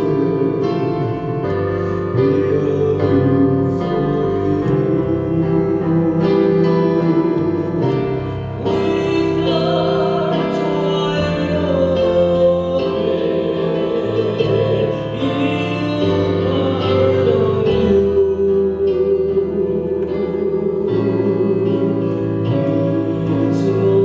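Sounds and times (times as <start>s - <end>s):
person singing worship song: 0.0s - 24.0s
piano chords: 0.0s - 24.0s.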